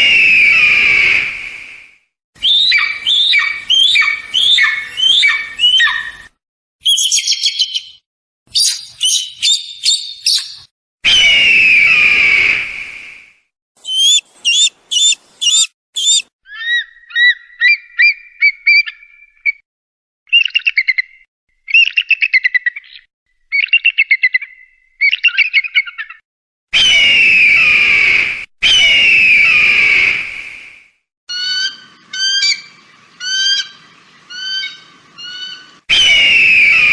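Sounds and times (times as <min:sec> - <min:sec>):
eagle screams: 0:02.4 - 0:06.2, 0:11.0 - 0:12.6, 0:13.8 - 0:17.8, 0:34.3 - 0:36.9
eagle calling: 0:02.4 - 0:08.0, 0:08.6 - 0:10.7, 0:13.8 - 0:19.2, 0:31.3 - 0:36.9.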